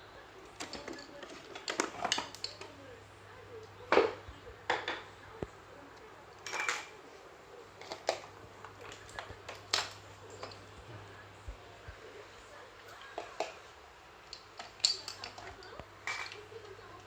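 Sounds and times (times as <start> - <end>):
tools clicking and knocking: 0.6 - 2.7, 14.3 - 16.5.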